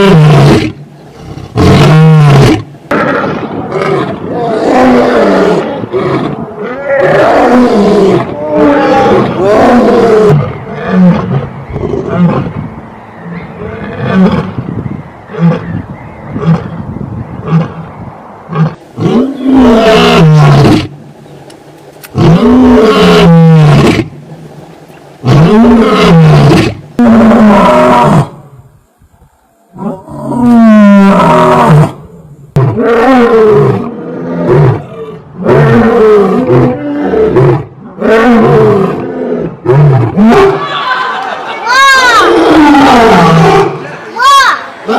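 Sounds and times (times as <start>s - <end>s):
lion grunting and roaring: 29.2s - 40.6s.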